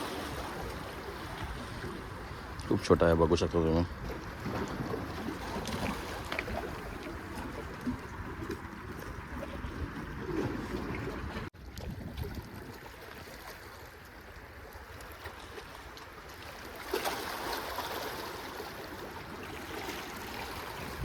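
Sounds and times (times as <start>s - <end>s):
wind rumbling on microphone: 0.0s - 13.4s, 20.2s - 21.0s
moving water: 0.0s - 21.0s.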